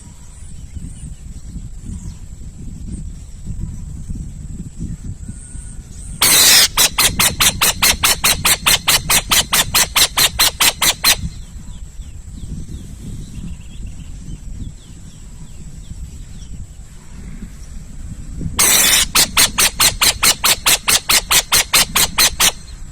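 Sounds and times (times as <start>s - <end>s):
owl screeching: 6.2s - 11.3s, 18.6s - 22.7s.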